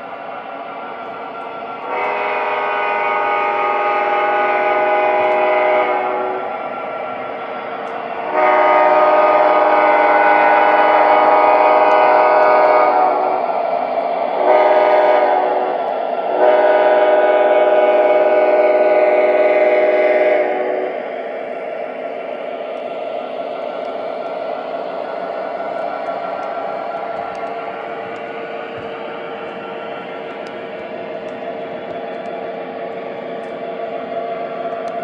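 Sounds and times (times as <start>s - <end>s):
model train horn blasts: 1.8s - 6.6s, 8.2s - 13.5s, 14.3s - 21.1s.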